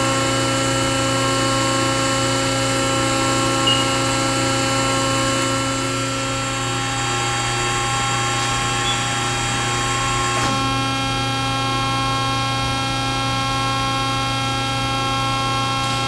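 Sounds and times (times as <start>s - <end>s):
hydraulic pump humming: 3.0s - 10.8s
steady whining tones: 3.5s - 10.5s.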